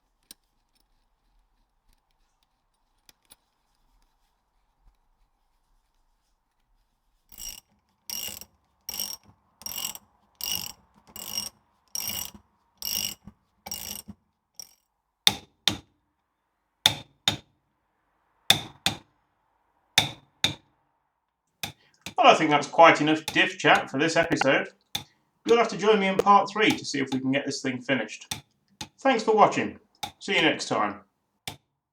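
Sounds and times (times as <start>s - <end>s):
ratchet wrench pawl clicks: 7.3s - 15.8s
sharp paired clicks: 15.3s - 15.8s, 16.9s - 17.4s, 18.5s - 19.0s, 20.0s - 20.6s, 21.6s - 30.8s.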